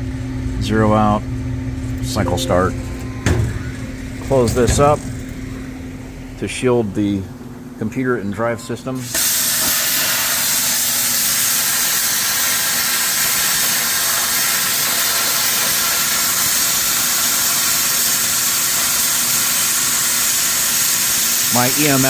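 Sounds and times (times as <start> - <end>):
plasma cutter hissing: 9.0 - 22.0.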